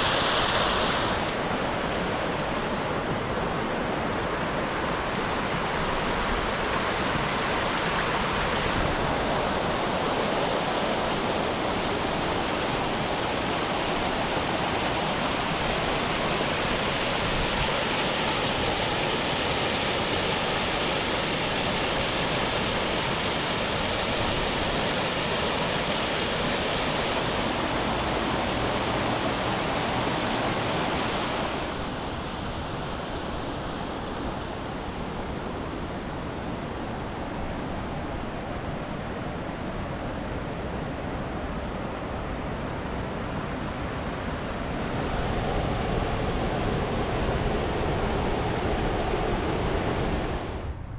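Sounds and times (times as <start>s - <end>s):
water rushing over waterfall: 0.0s - 33.5s.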